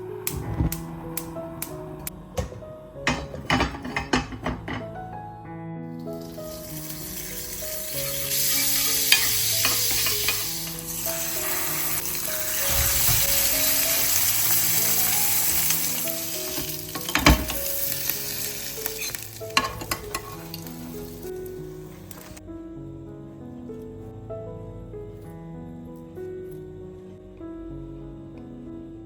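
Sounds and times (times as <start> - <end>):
food sizzling in hot oil: 6.2 - 22.4.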